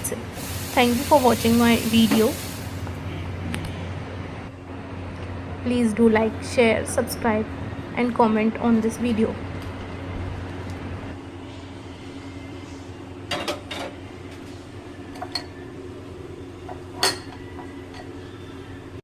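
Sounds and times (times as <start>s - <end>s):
steady low hum: 0.0s - 19.0s
kitchenware clinking: 16.7s - 18.2s.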